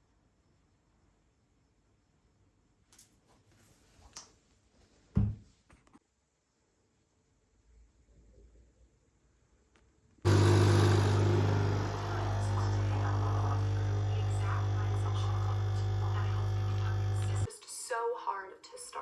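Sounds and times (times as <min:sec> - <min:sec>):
appliance motor humming: 0:10.3 - 0:17.5.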